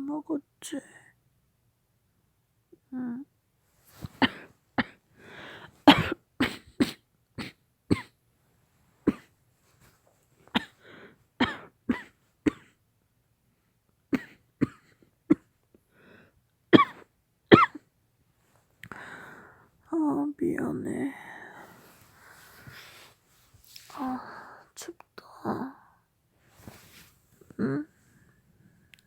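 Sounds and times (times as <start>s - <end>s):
woman coughing hard: 4.2s - 5.0s, 5.8s - 8.2s, 9.0s - 9.3s, 10.5s - 10.8s, 11.4s - 12.8s, 14.2s - 15.5s, 16.7s - 17.8s.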